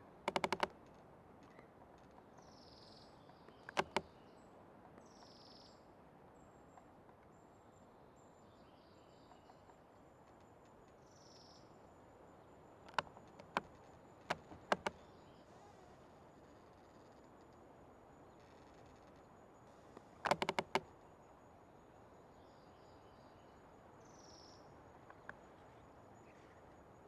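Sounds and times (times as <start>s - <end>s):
tree creaking: 0.1s - 2.3s, 3.6s - 4.2s, 12.7s - 21.1s.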